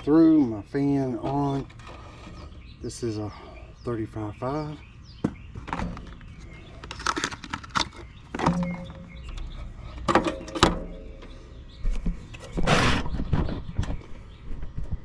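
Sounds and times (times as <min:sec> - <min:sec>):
hands handling parts and tools: 0:05.6 - 0:09.0.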